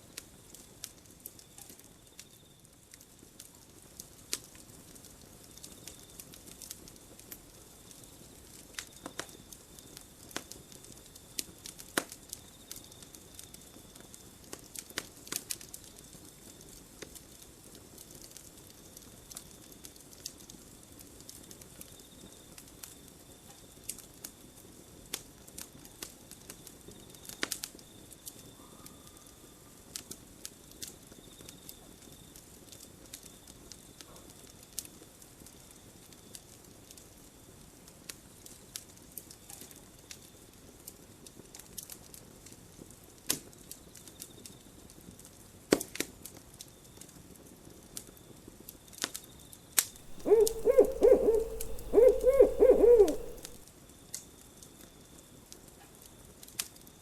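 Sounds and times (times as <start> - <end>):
campfire crackling: 50.0 - 53.6.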